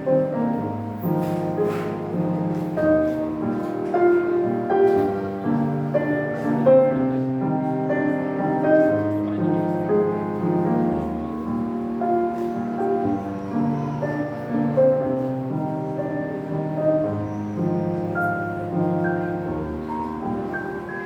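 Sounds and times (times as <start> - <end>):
gentle piano-like instrumental music: 0.0 - 21.0.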